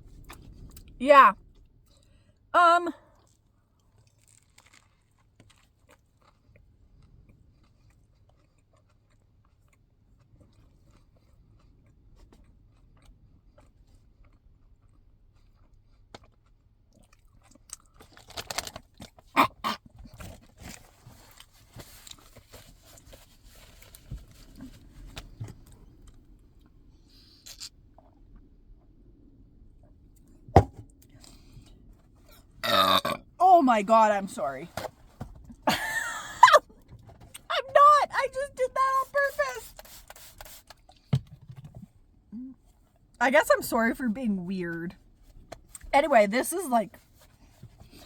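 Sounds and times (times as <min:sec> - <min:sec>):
person chewing and crunching food: 0:03.1 - 0:28.5, 0:31.0 - 0:33.4.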